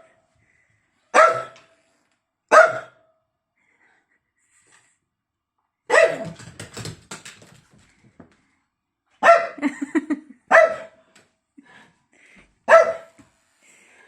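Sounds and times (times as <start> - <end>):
dog barking: 1.1 - 1.6, 2.5 - 3.0, 5.9 - 6.3, 9.2 - 9.6, 10.5 - 11.0, 12.7 - 13.2.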